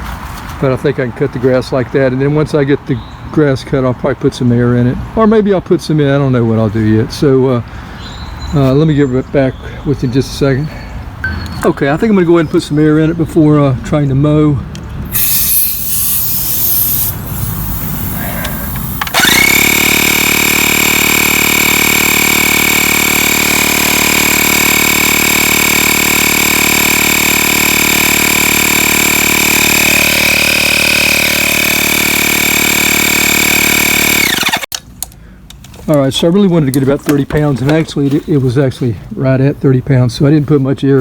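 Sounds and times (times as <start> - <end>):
air compressor motor whining: 15.0 - 34.7.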